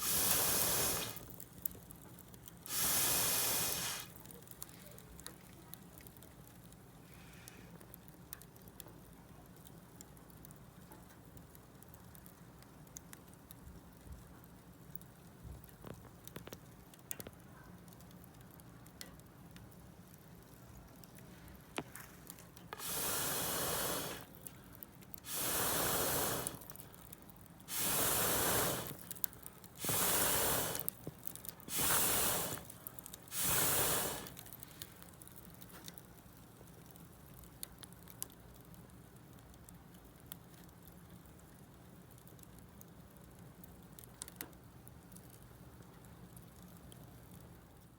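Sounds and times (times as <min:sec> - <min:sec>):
loud hissing bursts: 0:00.0 - 0:01.3, 0:02.7 - 0:04.2, 0:22.8 - 0:24.3, 0:25.2 - 0:26.8, 0:27.7 - 0:29.1, 0:29.7 - 0:31.0, 0:31.6 - 0:34.6
bonfire crackling and popping: 0:00.0 - 0:47.9.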